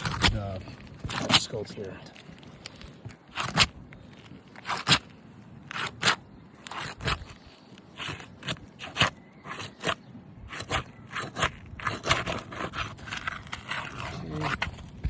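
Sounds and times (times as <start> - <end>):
metal tool scraping roof shingles: 0.0 - 1.8, 5.7 - 15.0.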